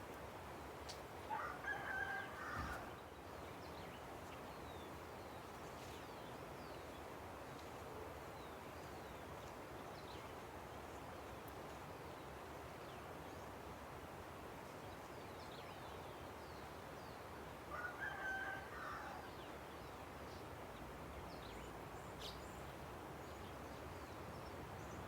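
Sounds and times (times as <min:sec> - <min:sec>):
rooster crowing: 0:01.3 - 0:03.0, 0:17.7 - 0:19.3.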